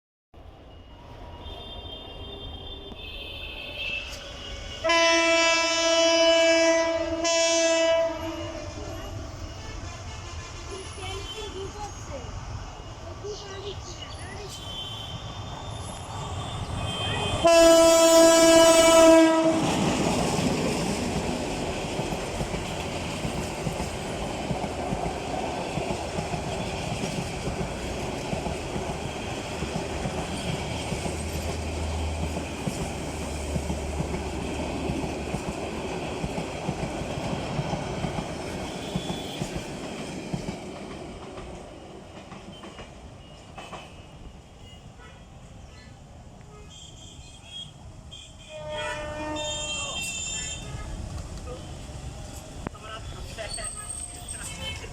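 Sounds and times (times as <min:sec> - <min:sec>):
locomotive horn blast: 0:01.4 - 0:11.4, 0:16.5 - 0:19.9, 0:46.5 - 0:51.1
train wheels rumbling on rails: 0:02.6 - 0:44.8, 0:48.5 - 0:54.9.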